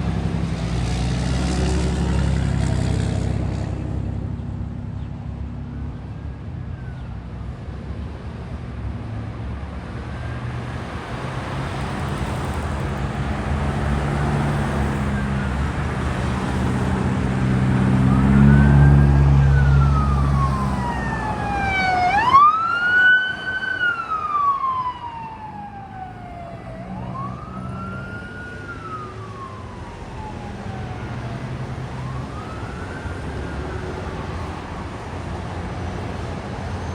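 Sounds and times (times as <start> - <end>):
emergency vehicle siren wailing: 10.2 - 36.9
vehicle engine passing: 10.8 - 34.9.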